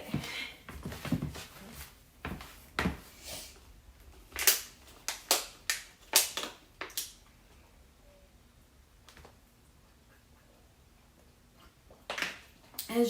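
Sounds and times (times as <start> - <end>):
plastic packaging clicks and crackles: 4.3 - 7.2.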